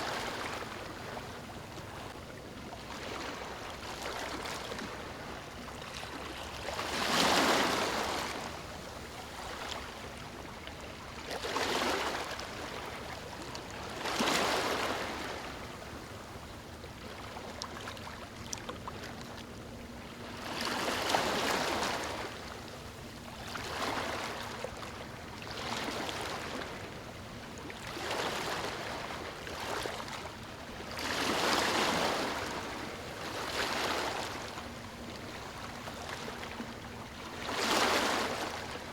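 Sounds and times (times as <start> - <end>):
waves breaking on beach: 0.0 - 1.2, 2.9 - 9.8, 31.0 - 36.6, 37.3 - 38.9.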